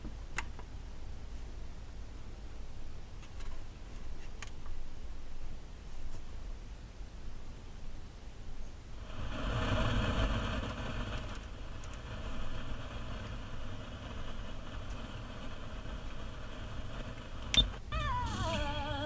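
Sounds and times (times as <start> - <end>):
low steady hum: 0.0 - 19.0
radio static hiss: 8.0 - 19.0.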